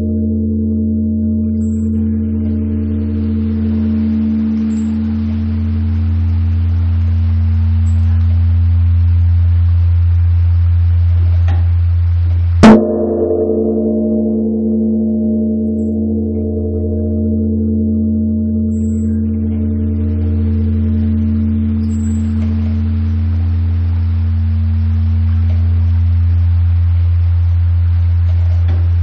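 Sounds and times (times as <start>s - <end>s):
wooden log striking bell: 0.0s - 8.7s, 12.6s - 27.0s
large temple bell ringing: 0.0s - 11.8s, 12.6s - 29.0s.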